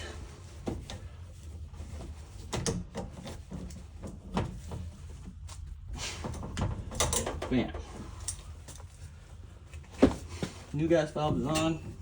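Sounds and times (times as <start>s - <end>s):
metal tools clicking and knocking: 6.9s - 7.6s.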